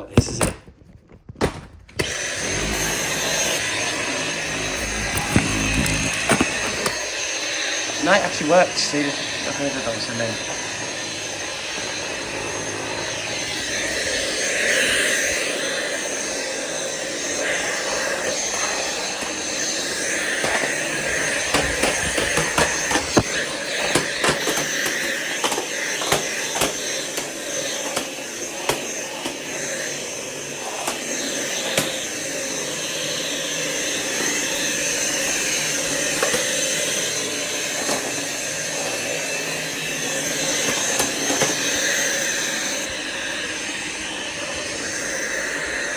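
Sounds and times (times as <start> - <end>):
vacuum cleaner whining: 1.4 - 45.9
sharp clicks and knocks: 21.4 - 28.1.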